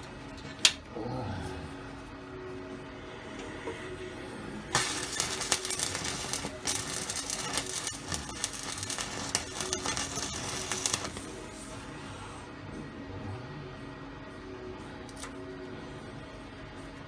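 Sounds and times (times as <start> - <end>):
welding arc crackling and sputtering: 4.7 - 11.8.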